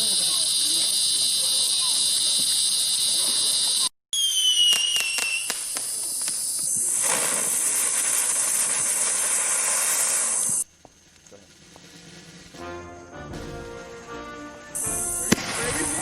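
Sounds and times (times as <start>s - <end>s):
fountain firework hissing spray: 0.0s - 3.9s, 4.6s - 16.0s
firework whistle falling in pitch: 0.0s - 7.3s, 12.6s - 16.0s
sharp crackling pops: 0.0s - 16.0s.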